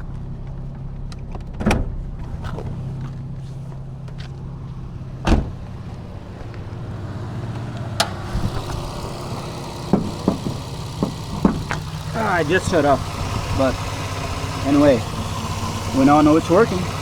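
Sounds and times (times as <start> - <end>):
car engine idling: 0.1 - 17.0
electric radiator fans running: 4.6 - 17.0
sharp knocks: 8.0 - 15.8.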